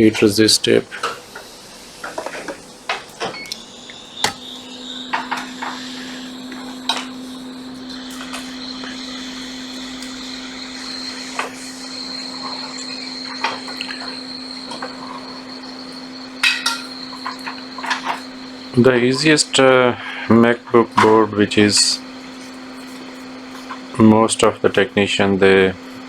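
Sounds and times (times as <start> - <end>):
hot-air blower whining and hissing: 0.0 - 26.0.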